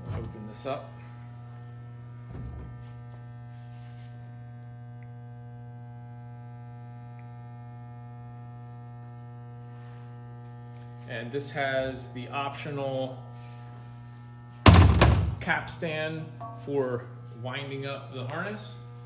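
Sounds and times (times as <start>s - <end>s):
electrical mains hum: 0.0s - 19.0s
low bump: 14.7s - 15.6s.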